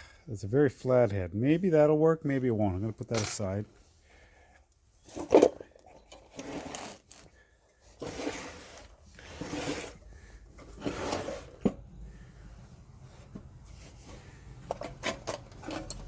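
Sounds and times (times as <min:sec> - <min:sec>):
hardware parts scraping and shuffling: 0:02.5 - 0:04.0, 0:04.6 - 0:16.0
drawers sliding: 0:05.1 - 0:07.2, 0:08.0 - 0:11.9.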